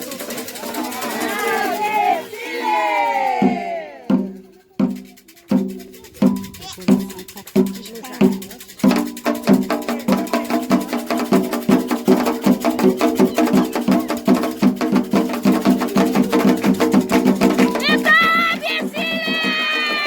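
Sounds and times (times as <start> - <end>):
hand drums playing: 3.4 - 20.0.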